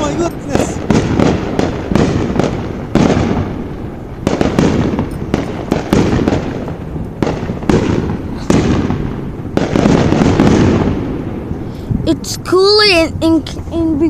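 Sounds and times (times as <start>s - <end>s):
fireworks banging: 0.0s - 14.0s.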